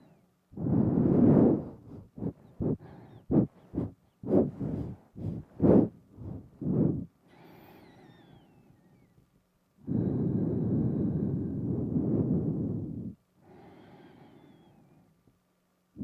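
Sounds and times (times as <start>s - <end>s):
sharp nasal puffs: 0.0s - 8.4s
long steady exhale: 0.0s - 9.1s, 9.8s - 15.2s
faint breathy hiss: 0.0s - 9.2s, 9.8s - 15.3s.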